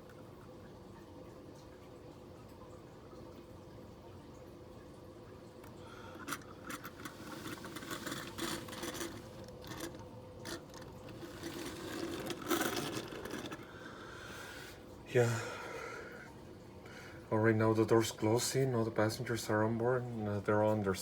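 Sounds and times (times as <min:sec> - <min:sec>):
plastic toy pieces handled: 0:06.2 - 0:13.6.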